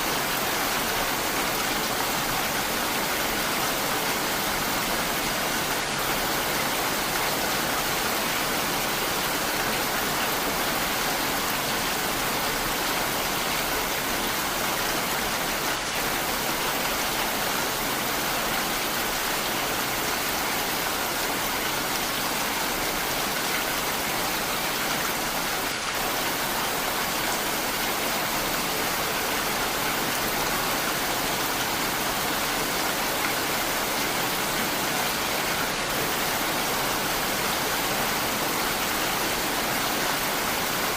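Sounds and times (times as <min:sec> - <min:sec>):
heavy rain falling: 0:00.0 - 0:40.9.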